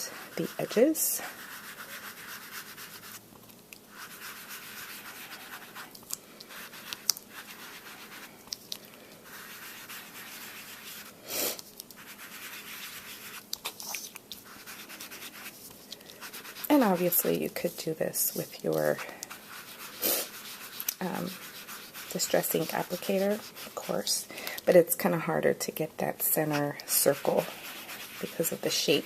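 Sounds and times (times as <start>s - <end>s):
tool scratching on cardstock: 12.0s - 24.0s, 26.5s - 28.7s.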